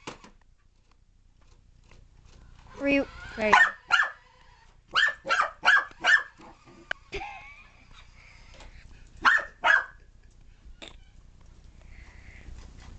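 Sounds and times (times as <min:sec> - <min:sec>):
puppy barking: 0:03.4 - 0:04.2, 0:04.9 - 0:06.6, 0:09.2 - 0:10.1.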